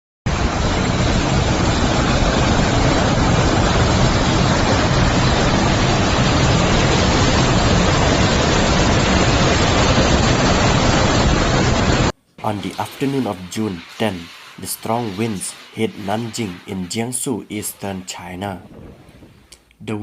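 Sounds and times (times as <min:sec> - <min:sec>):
strong storm wind blowing: 0:00.3 - 0:19.6.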